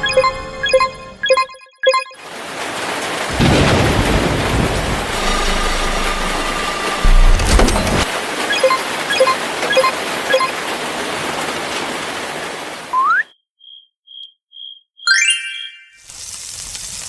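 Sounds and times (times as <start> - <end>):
thunder-like rumble: 3.3 - 8.1
heavy low boom: 3.4 - 8.1
rushing hissing noise: 4.6 - 8.1.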